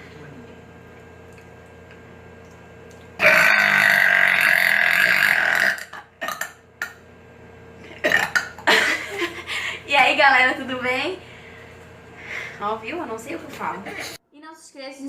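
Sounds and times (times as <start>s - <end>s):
woman burping: 3.2s - 6.6s, 7.8s - 9.0s.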